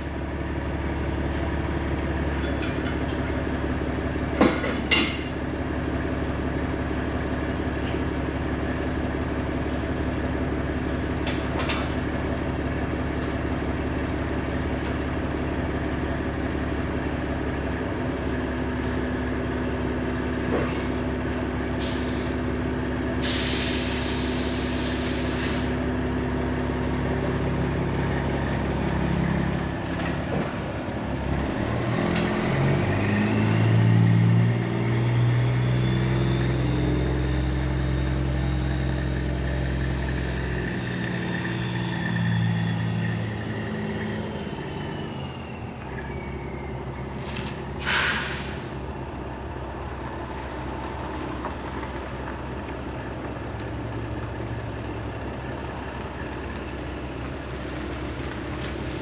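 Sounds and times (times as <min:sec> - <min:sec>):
truck engine revving: 0:23.0 - 0:59.0
air hiss: 0:23.2 - 0:25.8, 0:47.8 - 0:48.8.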